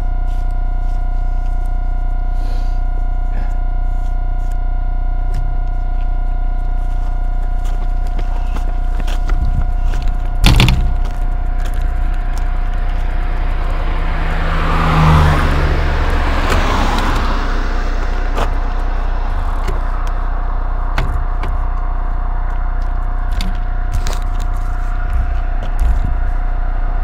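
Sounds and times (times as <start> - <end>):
bicycle rumbling over rough path: 5.4 - 14.1, 18.1 - 27.0.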